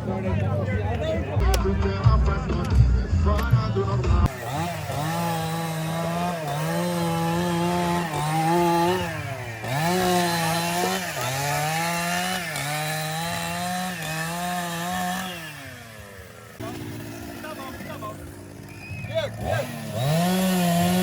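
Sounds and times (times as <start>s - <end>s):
small engine running at high speed: 4.3s - 21.0s.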